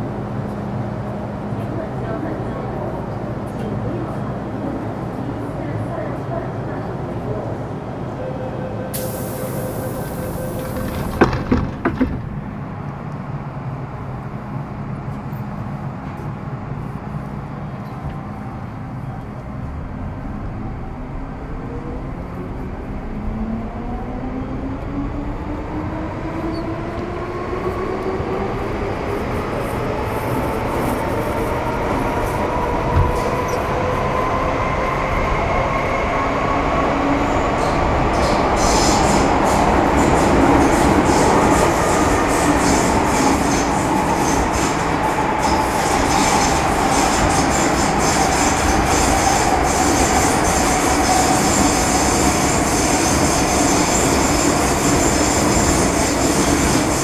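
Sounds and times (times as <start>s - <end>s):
train car rumbling: 0.0s - 57.0s
knocks inside train: 10.6s - 12.5s.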